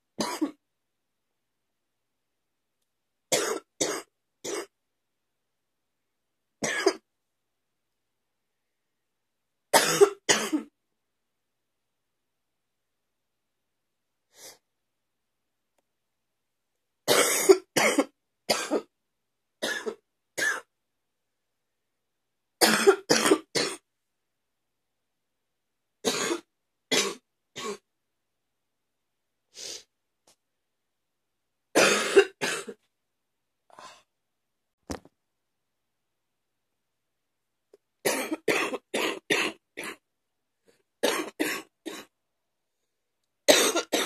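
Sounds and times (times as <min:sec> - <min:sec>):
woman's wet cough: 0:09.8 - 0:10.7, 0:17.1 - 0:18.9, 0:22.6 - 0:23.8, 0:31.8 - 0:32.8, 0:43.5 - 0:44.0.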